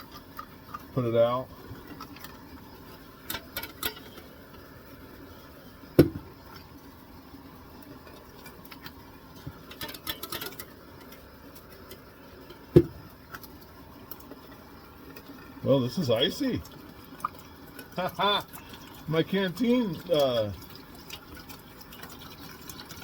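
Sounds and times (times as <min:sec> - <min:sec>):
light clinking and clattering: 0:03.2 - 0:04.3, 0:09.5 - 0:13.4.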